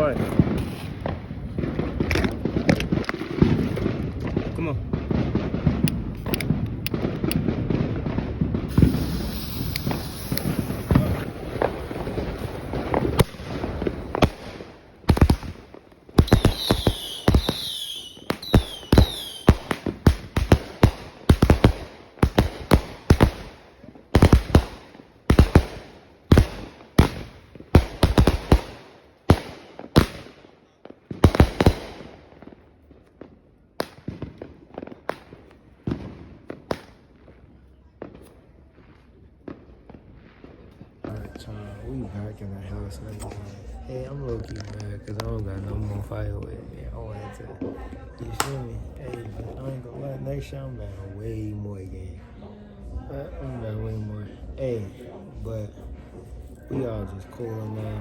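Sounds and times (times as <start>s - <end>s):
fireworks bangs: 0.0s - 50.5s
fireworks crackling: 0.0s - 52.0s
falling whistles: 16.3s - 19.5s.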